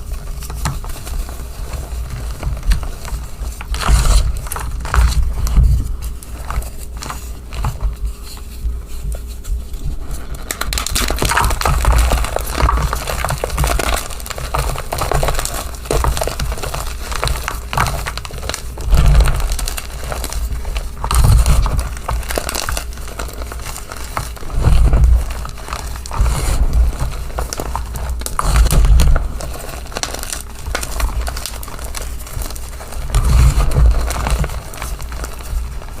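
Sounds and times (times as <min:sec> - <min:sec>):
chalk crunching and crackling: 0:00.0 - 0:36.0.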